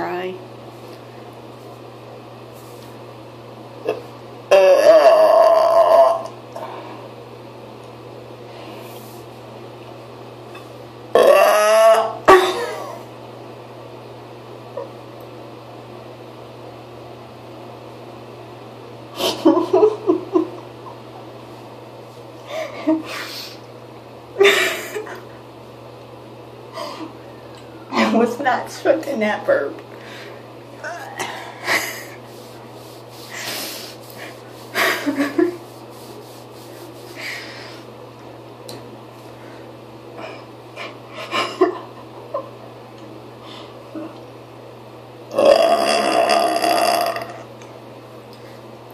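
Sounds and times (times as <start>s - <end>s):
steady low hum: 0.0s - 48.9s
breathing close to microphone: 37.1s - 37.9s.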